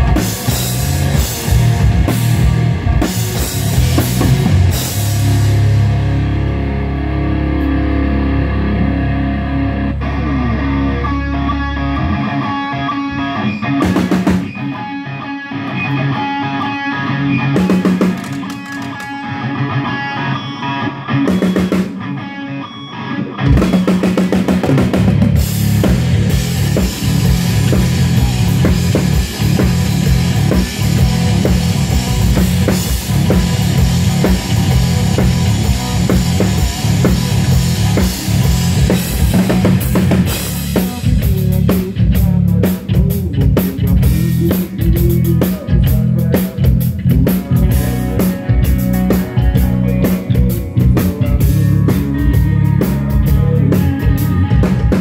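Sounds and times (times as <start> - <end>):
drum and cymbal hits: 0.0 - 6.3, 17.6 - 19.2, 23.5 - 53.6
electric guitar phrases: 0.0 - 55.0
rock band playing: 0.0 - 55.0
held low bass note: 25.2 - 42.6.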